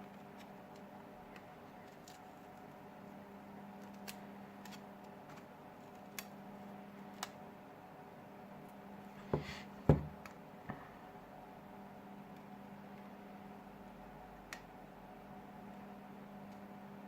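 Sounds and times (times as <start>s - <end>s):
knocks on glass: 9.9s - 10.1s.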